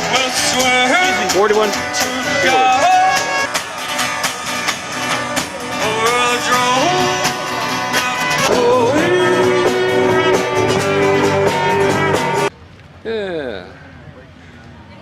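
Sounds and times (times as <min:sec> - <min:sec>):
person singing over a steady beat: 0:01.8 - 0:12.4.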